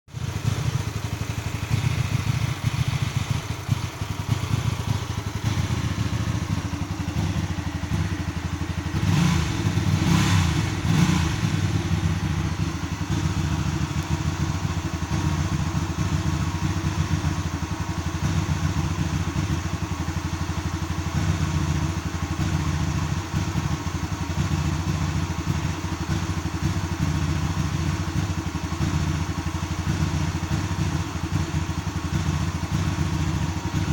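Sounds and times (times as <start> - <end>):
motorcycle engine idling roughly: 0.1 - 33.9.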